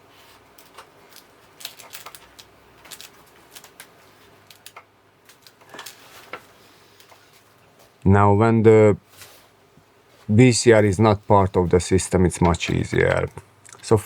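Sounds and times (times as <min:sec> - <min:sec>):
plastic parts clicking and knocking: 0:00.6 - 0:07.2, 0:12.4 - 0:13.9.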